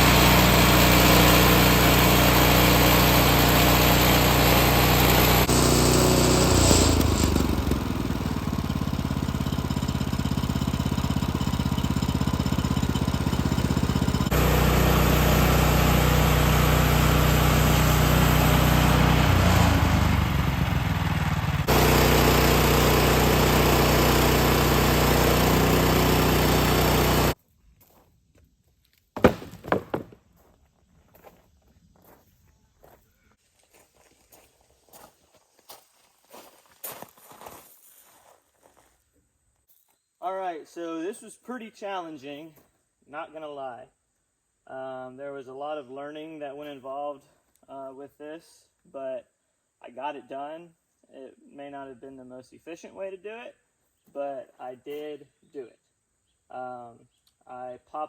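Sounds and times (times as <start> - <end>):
sawmill engine running: 0.0 - 27.4
sharp knocks: 29.2 - 30.2.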